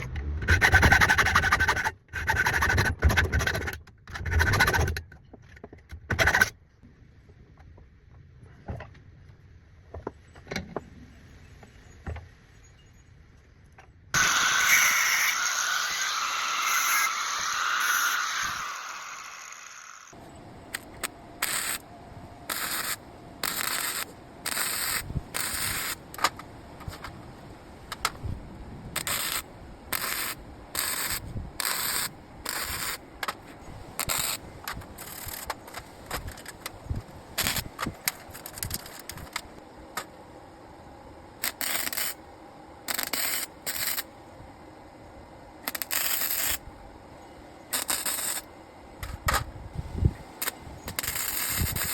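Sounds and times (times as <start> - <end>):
welding crackling hiss: 14.2 - 20.1, 20.7 - 21.8, 22.5 - 26.1, 29.0 - 33.0, 33.9 - 34.4, 35.0 - 36.0, 37.4 - 37.7, 41.4 - 42.2, 42.9 - 44.1, 45.7 - 46.6, 47.7 - 48.5, 50.4 - 51.9.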